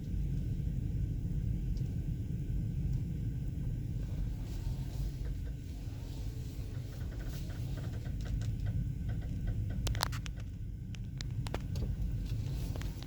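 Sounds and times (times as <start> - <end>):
steady low rumble: 0.0 - 13.0
creaks and clicks: 6.7 - 13.0.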